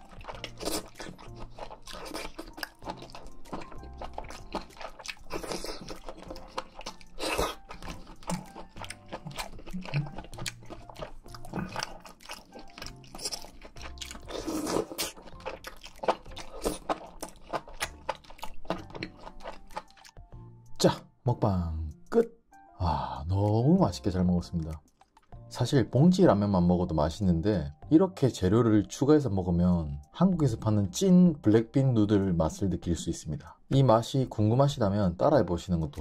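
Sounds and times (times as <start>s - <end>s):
person crunching food: 0.0s - 20.3s, 24.5s - 25.4s
wet mouth clicks: 6.2s - 15.1s, 24.5s - 25.4s.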